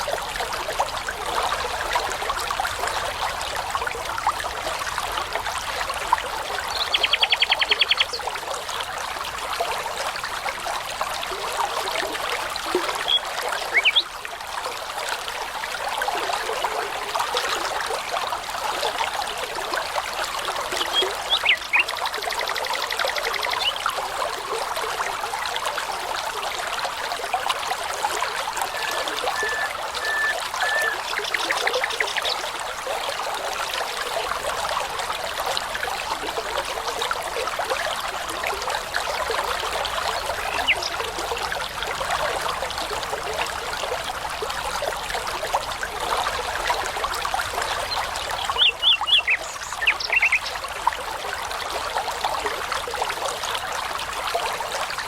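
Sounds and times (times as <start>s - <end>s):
running water: 0.0s - 55.0s
songbirds calling: 6.6s - 8.3s, 12.9s - 14.1s, 20.8s - 22.0s, 28.2s - 32.6s, 40.2s - 41.0s, 47.8s - 50.6s
short whistled bird notes: 28.7s - 31.1s.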